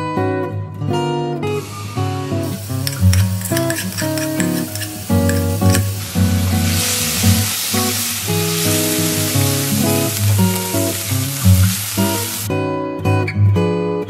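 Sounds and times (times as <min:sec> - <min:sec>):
acoustic guitar music: 0:00.0 - 0:14.0
food sizzling in hot oil: 0:01.6 - 0:12.5.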